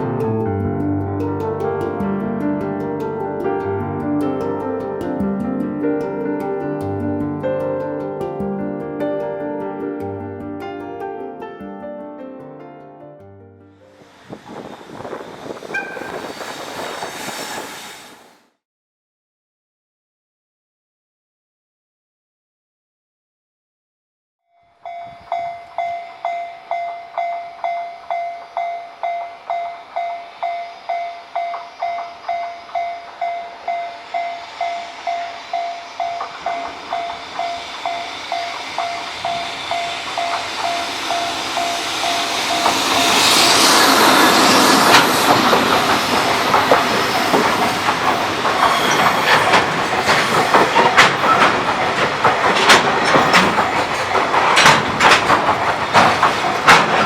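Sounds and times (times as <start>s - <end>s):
freight train passing: 13.8s - 18.4s, 24.8s - 57.0s
wheels clicking over rail joints: 14.1s - 17.4s, 31.3s - 57.0s
level crossing warning bell: 24.6s - 56.1s.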